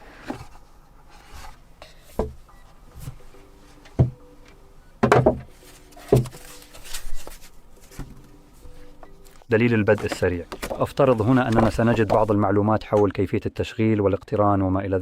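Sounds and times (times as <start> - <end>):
dull knocks on box: 5.0 - 5.5
cardboard rubbing and scraping: 9.8 - 12.4.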